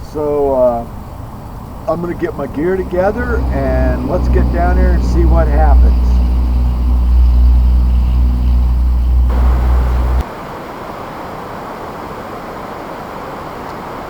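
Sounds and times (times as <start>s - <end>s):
vehicle engine idling: 0.0s - 10.2s
steady rushing noise: 0.0s - 14.0s.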